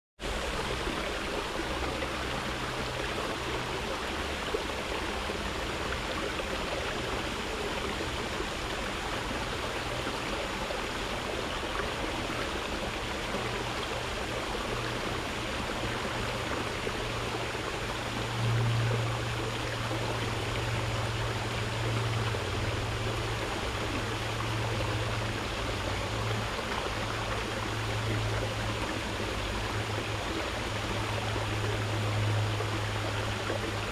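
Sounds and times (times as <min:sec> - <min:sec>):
water flowing: 0:00.2 - 0:33.9
low hum: 0:11.9 - 0:33.9.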